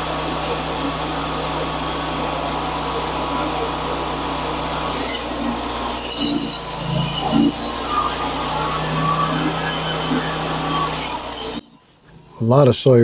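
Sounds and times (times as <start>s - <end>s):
sawmill engine running: 0.0s - 13.0s
band blade cutting log: 4.6s - 11.6s.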